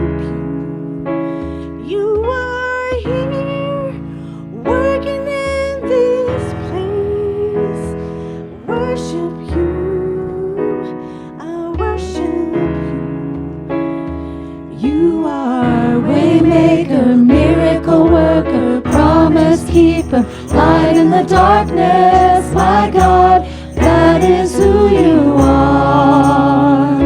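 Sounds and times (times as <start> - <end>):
person singing: 14.8 - 27.0
keyboard playing chords: 18.9 - 27.0.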